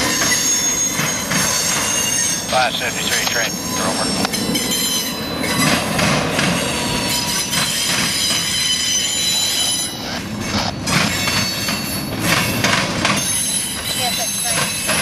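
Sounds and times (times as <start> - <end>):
high wheel squeal: 0.0 - 15.0
train wheels clattering: 0.0 - 15.0.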